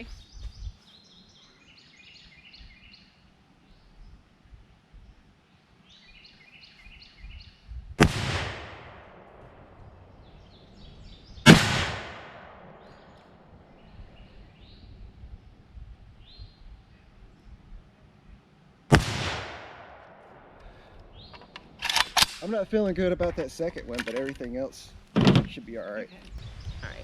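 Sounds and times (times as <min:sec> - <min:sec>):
birds chirping: 0:00.0 - 0:07.8, 0:09.6 - 0:11.6, 0:12.3 - 0:18.5, 0:20.6 - 0:21.8, 0:22.4 - 0:27.0
rifle shots echoing: 0:08.0 - 0:10.2, 0:11.4 - 0:13.6, 0:18.9 - 0:22.5.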